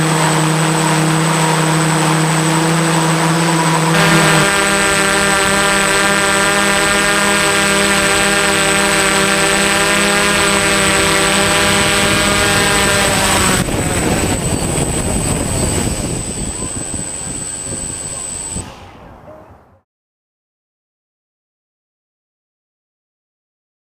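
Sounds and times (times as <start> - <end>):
drone propellers buzzing: 0.0 - 19.3
rough rushing noise: 0.0 - 19.4.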